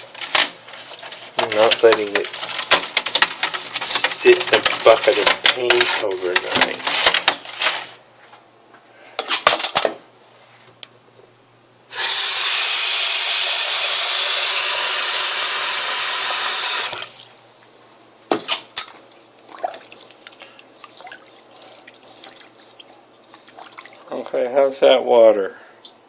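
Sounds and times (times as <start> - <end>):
clatter of things handled: 0.0 - 7.9.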